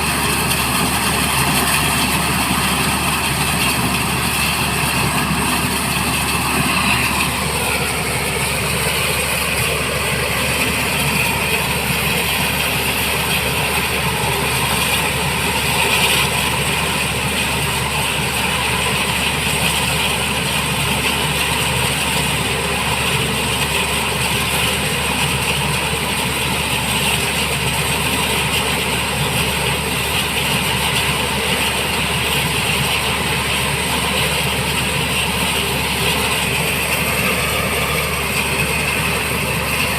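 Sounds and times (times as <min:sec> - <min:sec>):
high whine: 0:00.0 - 0:18.6, 0:31.0 - 0:39.9
helicopter engine running: 0:00.0 - 0:39.9.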